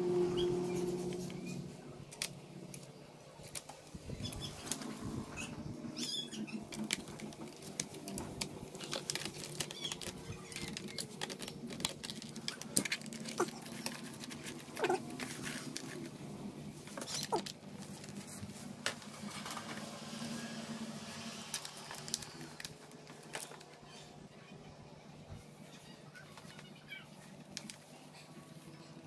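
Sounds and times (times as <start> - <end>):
hands clicking on laptop parts: 6.5 - 16.1, 27.4 - 27.9.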